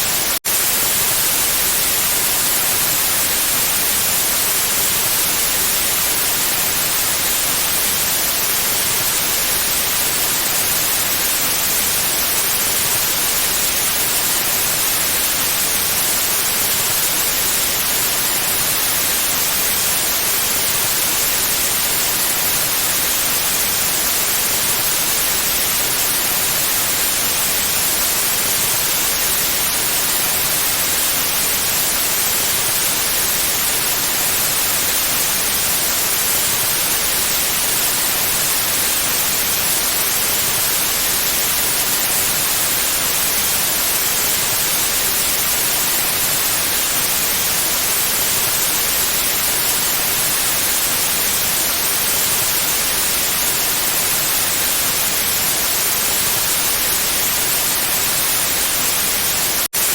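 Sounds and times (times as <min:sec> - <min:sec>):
white noise hiss: 0:00.0 - 0:59.9.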